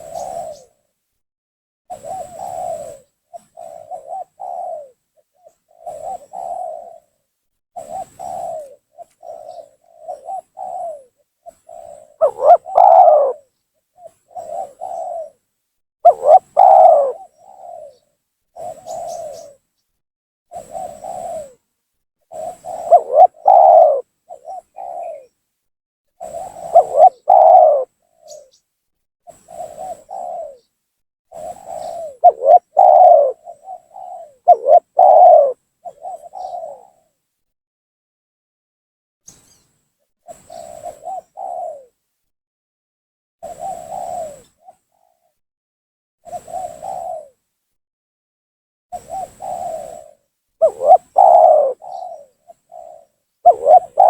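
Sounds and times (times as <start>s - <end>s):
dove cooing: 0.0s - 0.8s, 1.9s - 7.2s, 7.8s - 15.4s, 16.0s - 18.0s, 18.6s - 19.6s, 20.5s - 21.7s, 22.3s - 25.4s, 26.2s - 28.6s, 29.3s - 30.7s, 31.3s - 37.1s, 40.3s - 42.0s, 43.4s - 45.3s, 46.3s - 47.4s, 49.0s - 54.0s.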